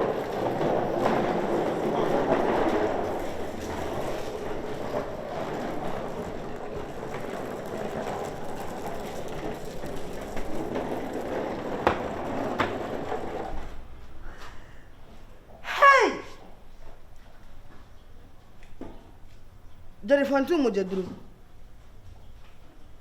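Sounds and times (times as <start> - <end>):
small hard wheels rolling on road: 0.0 - 14.2.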